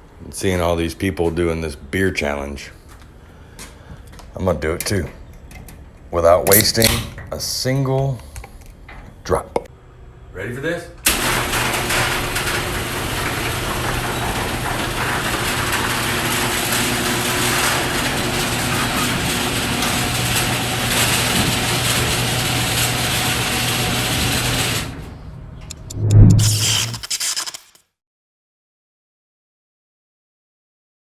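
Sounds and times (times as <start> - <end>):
garage door opener humming: 11.0 - 25.8
loud low thump: 25.8 - 26.5.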